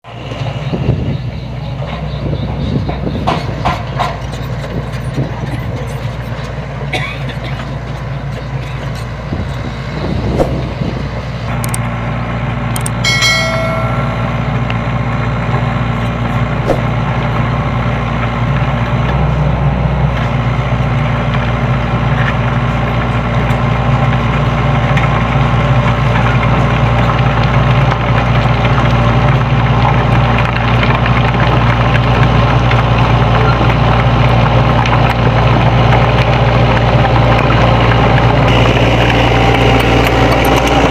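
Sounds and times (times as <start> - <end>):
excavator diesel engine running: 0.1 - 40.9
high-pitched whine: 13.1 - 14.9.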